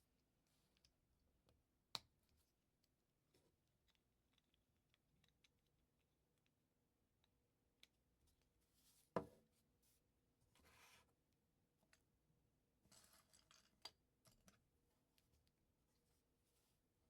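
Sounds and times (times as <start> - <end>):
soft rustles of plastic pieces: 12.8 - 17.0.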